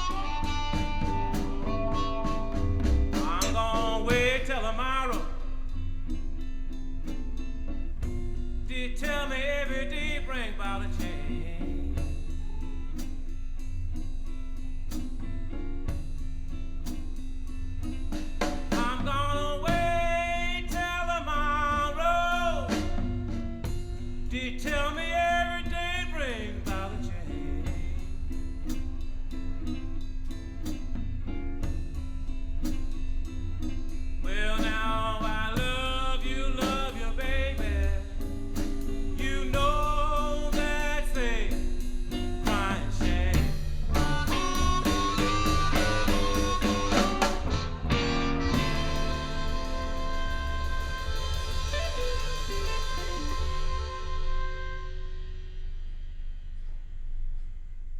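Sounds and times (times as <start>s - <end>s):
blues band playing: 0.0s - 55.8s
person singing sliding phrases: 34.5s - 38.1s, 42.4s - 44.4s.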